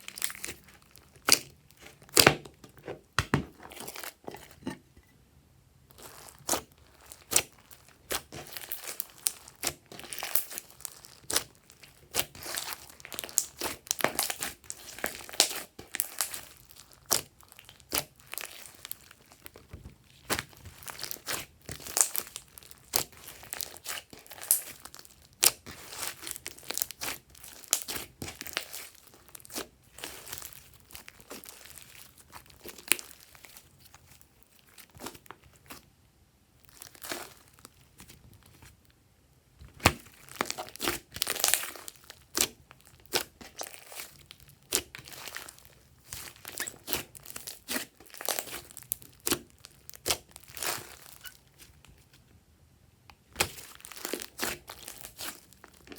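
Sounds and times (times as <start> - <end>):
slime squished by hand: 0.0 - 4.6, 5.9 - 35.8, 36.6 - 38.5, 39.7 - 52.1, 53.2 - 55.9.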